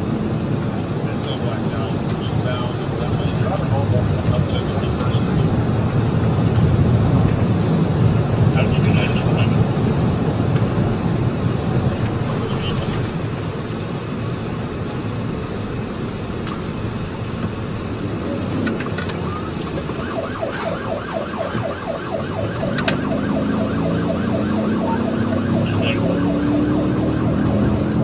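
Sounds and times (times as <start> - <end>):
vehicle noise: 0.0 - 28.0
siren warbling yelp: 19.2 - 28.0.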